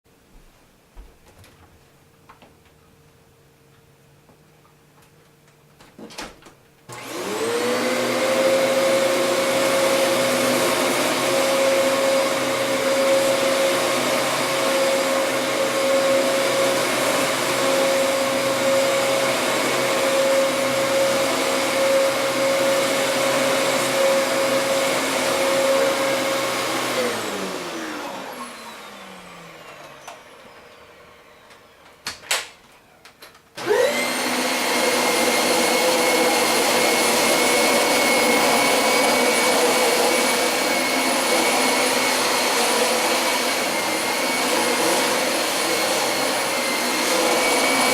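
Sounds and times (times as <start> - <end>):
vacuum cleaner motor whining: 6.9 - 47.9.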